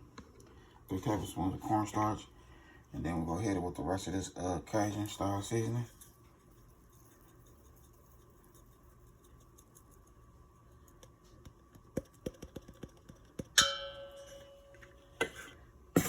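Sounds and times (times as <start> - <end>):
sharp ringing clink: 13.6 - 14.8.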